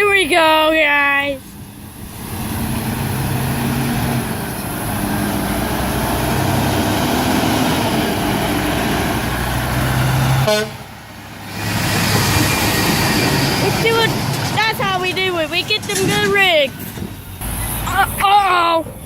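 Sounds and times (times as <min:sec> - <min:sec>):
passing traffic rumble: 0:00.0 - 0:19.0
truck air horn blasts: 0:10.2 - 0:10.9.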